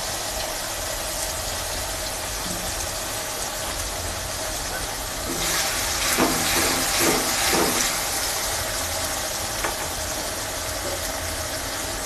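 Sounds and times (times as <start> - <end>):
paste sizzling in hot oil: 0.0 - 12.0
spatula scraping pan: 5.3 - 8.0.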